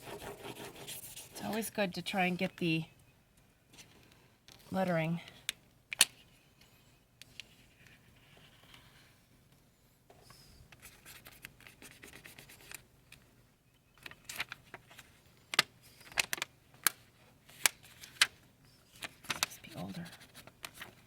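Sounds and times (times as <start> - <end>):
paper and tape crackling: 10.3 - 12.8, 14.0 - 21.0.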